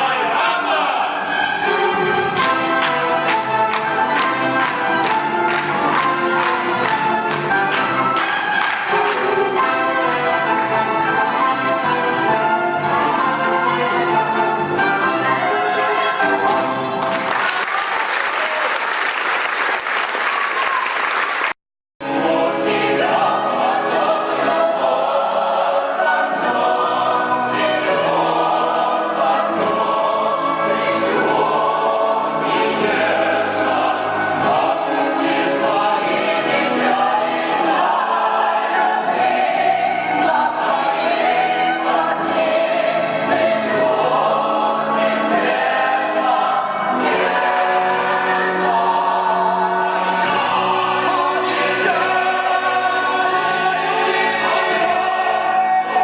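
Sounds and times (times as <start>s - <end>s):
choir singing with orchestra: 0.0s - 17.3s, 22.0s - 56.0s
audience applause: 2.4s - 9.6s, 17.0s - 21.6s.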